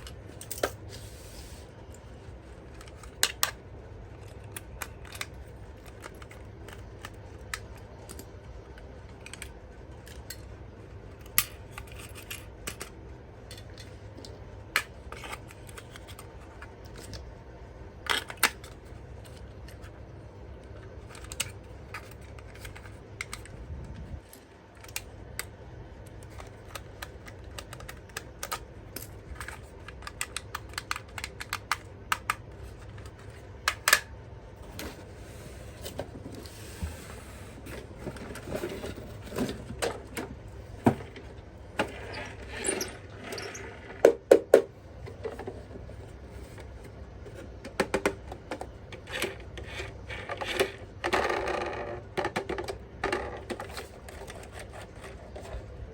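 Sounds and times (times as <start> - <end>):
steady low hum: 0.0 - 55.9.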